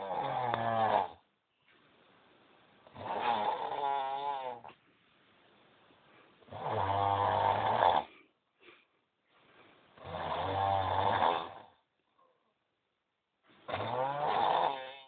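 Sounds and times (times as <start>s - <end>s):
low-pitched snoring: 0.0s - 1.2s, 2.9s - 4.7s, 6.5s - 8.2s, 10.0s - 11.8s, 13.7s - 15.0s
faint breathing: 8.0s - 10.0s.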